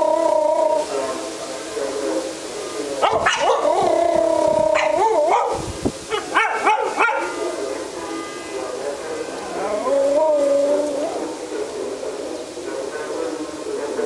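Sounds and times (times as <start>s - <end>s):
dog howling: 0.0s - 1.0s, 3.0s - 7.4s, 9.5s - 11.3s
dog yipping: 3.1s - 3.6s, 4.8s - 7.3s.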